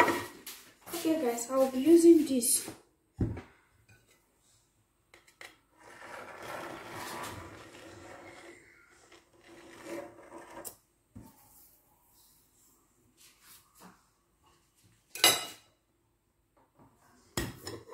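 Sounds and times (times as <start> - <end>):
rasping rubbing in kitchen: 5.8 - 10.7.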